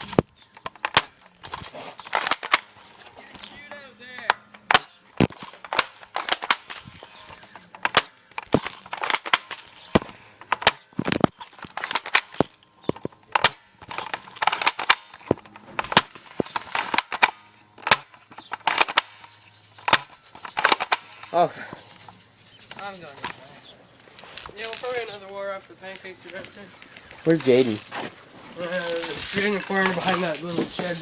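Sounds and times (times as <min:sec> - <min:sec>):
airsoft guns firing: 0:00.0 - 0:21.3.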